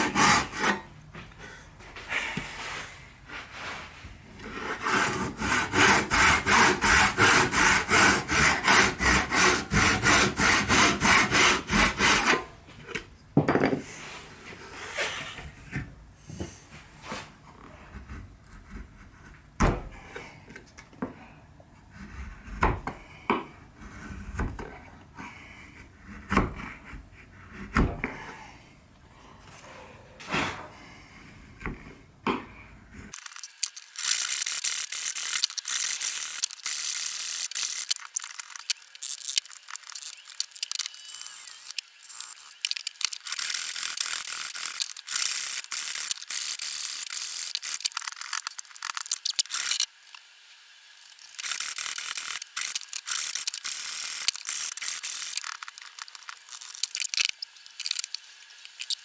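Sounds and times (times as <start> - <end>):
fast scratchy rasping: 33.1 - 59.0.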